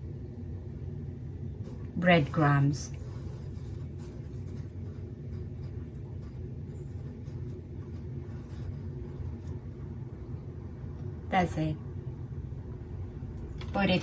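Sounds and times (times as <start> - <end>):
steady low hum: 0.0 - 14.0
rustling of dry breadcrumbs: 1.7 - 9.9.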